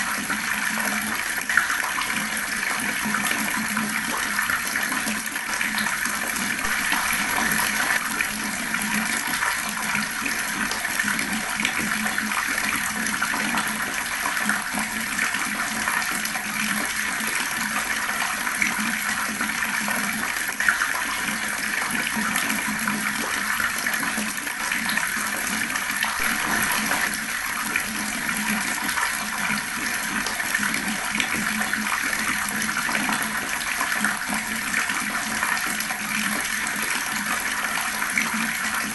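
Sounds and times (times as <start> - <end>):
water rushing and splashing: 6.6 - 9.7, 26.0 - 32.9.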